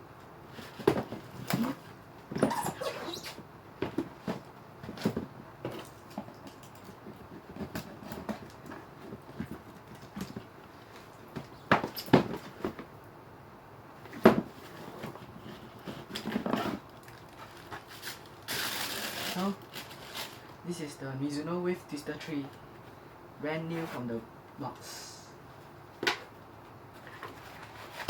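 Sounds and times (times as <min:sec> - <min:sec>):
shoe box handling taps and rustles: 0:00.6 - 0:02.6, 0:03.8 - 0:12.9, 0:14.0 - 0:18.3.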